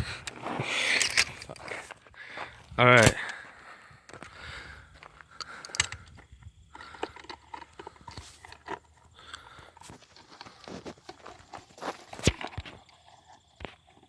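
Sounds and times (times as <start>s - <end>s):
footsteps crunching on rough ground: 0.0s - 13.8s
small knocks and scrapes: 9.7s - 14.0s.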